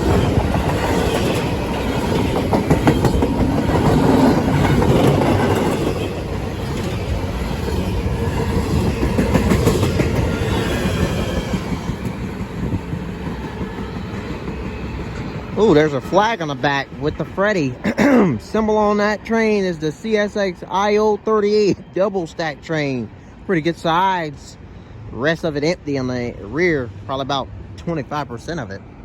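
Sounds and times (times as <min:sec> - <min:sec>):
wheels clicking over rail joints: 0:00.0 - 0:22.8
freight train rumbling past: 0:00.0 - 0:29.0.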